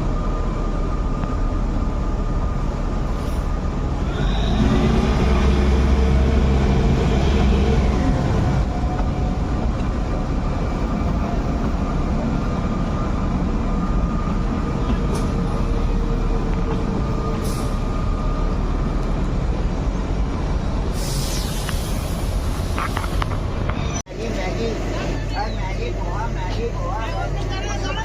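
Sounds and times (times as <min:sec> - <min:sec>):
train rumbling inside coach: 0:00.0 - 0:28.0
brief high hisses: 0:21.0 - 0:22.2.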